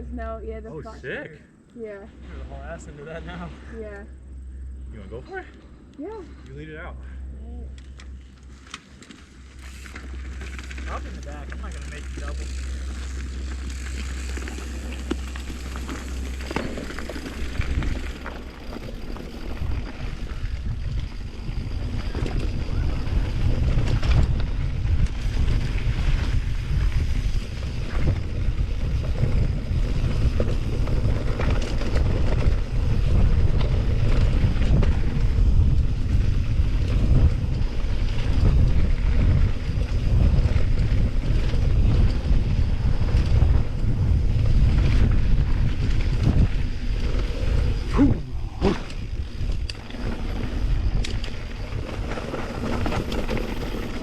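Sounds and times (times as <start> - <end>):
bike knocks and rattles: 7.9 - 20.2
wind buffeting microphone: 9.3 - 54.0.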